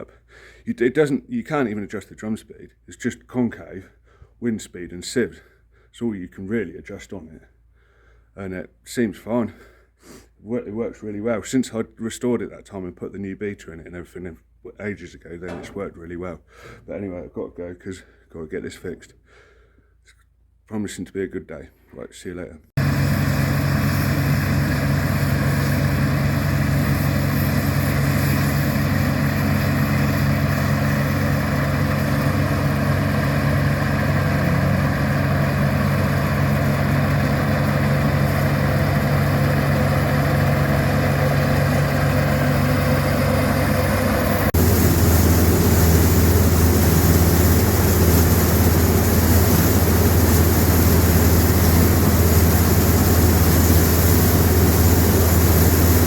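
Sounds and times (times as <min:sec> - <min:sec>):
heavy farm machinery engine: 0:15.5 - 0:16.0, 0:22.8 - 0:56.0
deeper louder engine note: 0:31.3 - 0:56.0.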